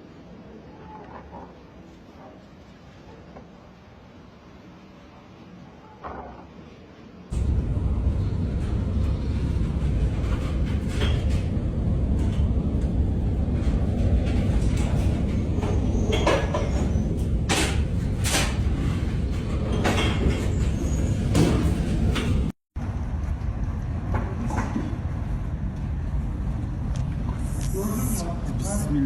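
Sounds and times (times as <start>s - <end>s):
ship rumbling at sea: 7.3s - 26.9s.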